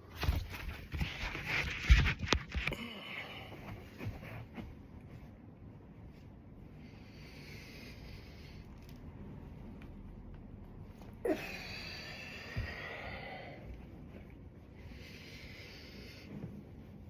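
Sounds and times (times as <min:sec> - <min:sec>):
person breathing hard: 0:02.6 - 0:04.2, 0:06.7 - 0:08.8, 0:11.2 - 0:16.7
person grunting: 0:11.2 - 0:12.1.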